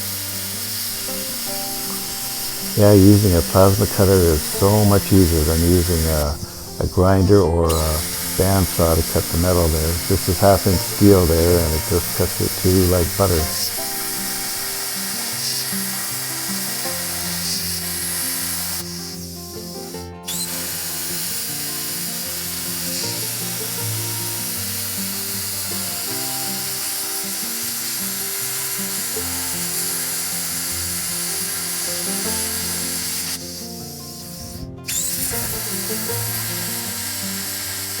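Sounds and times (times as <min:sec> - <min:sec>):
background music: 0:00.0 - 0:21.8, 0:28.2 - 0:38.0
plasma cutter hissing: 0:00.0 - 0:38.0.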